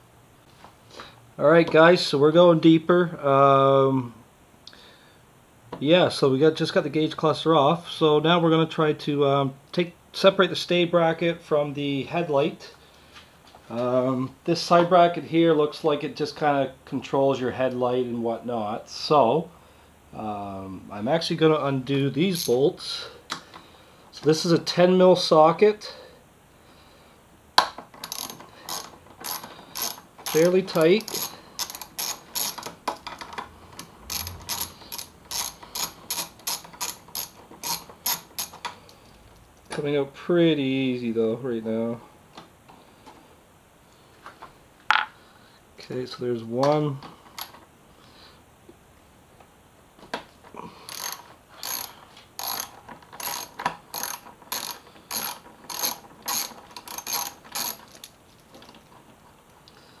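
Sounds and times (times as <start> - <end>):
ratchet wrench clicking: 28.0 - 38.8, 50.9 - 58.1.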